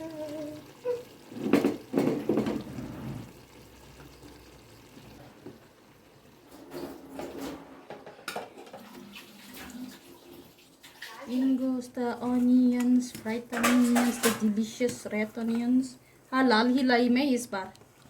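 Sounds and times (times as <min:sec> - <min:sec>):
pot and utensils clattering: 0:00.8 - 0:03.2, 0:06.4 - 0:11.5, 0:12.2 - 0:15.8.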